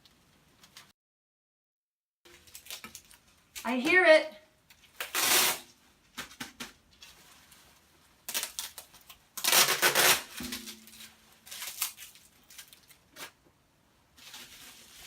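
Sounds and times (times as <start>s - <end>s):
packing material rustling and tearing: 2.3s - 3.8s, 4.7s - 13.4s, 14.1s - 15.0s.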